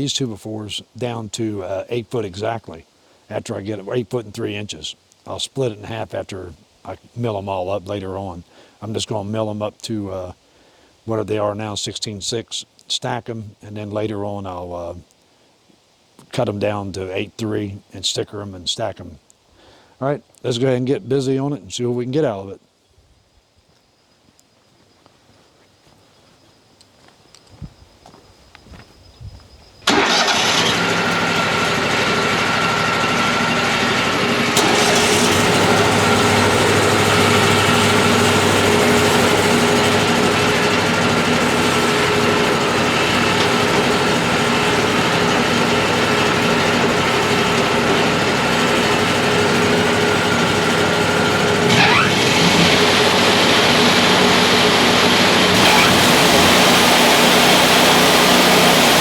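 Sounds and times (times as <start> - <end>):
sawmill engine running loudly: 29.9 - 59.0.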